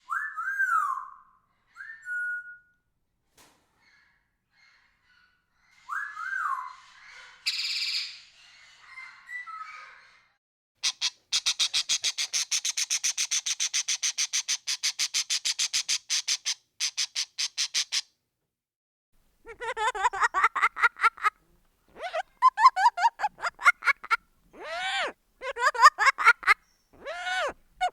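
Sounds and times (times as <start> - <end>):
parrot chattering: 10.8 - 18.0, 24.0 - 27.9
parrot harsh calls: 10.8 - 18.1, 22.0 - 22.3, 24.6 - 27.9
parrot squawking: 10.8 - 18.1, 22.0 - 22.3, 24.6 - 27.9.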